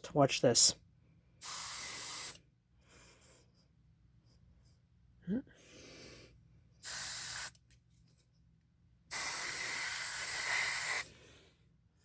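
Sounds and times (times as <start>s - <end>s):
aerosol spray hissing: 1.4s - 2.4s, 6.8s - 7.6s, 9.1s - 11.2s.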